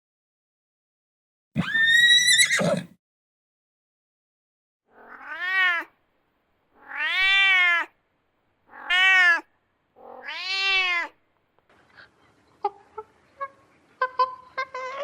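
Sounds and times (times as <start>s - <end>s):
cat meowing: 1.6s - 2.9s, 4.9s - 5.9s, 6.8s - 7.9s, 8.7s - 11.2s.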